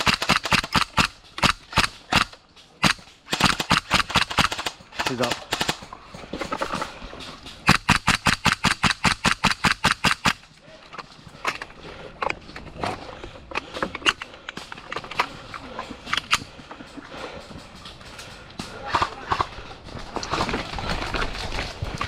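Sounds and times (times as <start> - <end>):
airsoft gun rapid shots: 0.0 - 5.9, 7.6 - 10.4.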